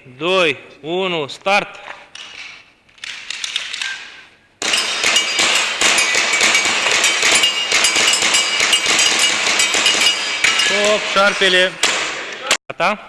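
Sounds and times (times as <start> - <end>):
airsoft pistols firing: 4.6 - 10.5, 11.8 - 12.3
pellets striking targets: 4.6 - 12.6.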